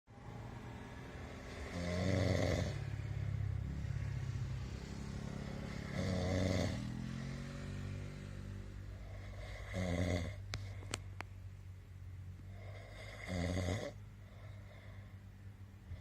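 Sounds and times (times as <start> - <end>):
person snoring: 1.3 - 7.5, 8.8 - 10.8, 12.5 - 15.0.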